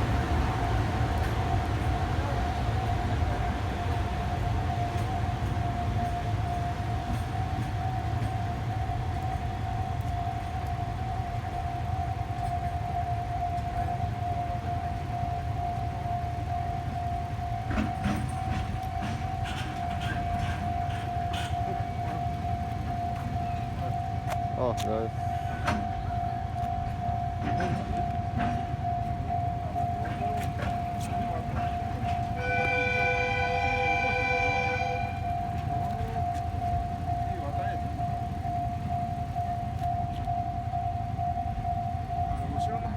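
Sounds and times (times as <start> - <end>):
level-crossing warning alarm tone: 0.0 - 42.9
train horn: 32.2 - 35.6.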